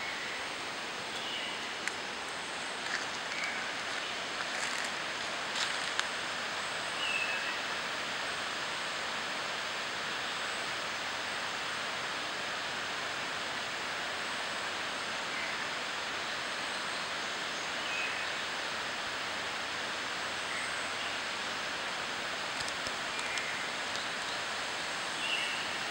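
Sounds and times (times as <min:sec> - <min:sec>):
steady rushing noise: 0:00.0 - 0:17.6
thin whistled bird notes: 0:03.3 - 0:04.1, 0:23.1 - 0:24.4.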